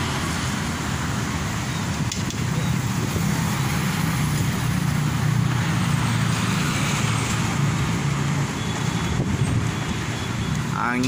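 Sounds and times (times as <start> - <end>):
wind gusting against microphone: 0.1 - 6.2, 7.4 - 11.0.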